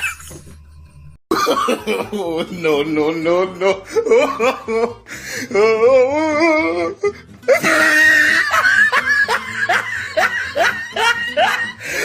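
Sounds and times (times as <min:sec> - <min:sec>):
warbling cartoon laugh: 0:00.0 - 0:00.7, 0:07.5 - 0:12.0
music: 0:00.0 - 0:12.0.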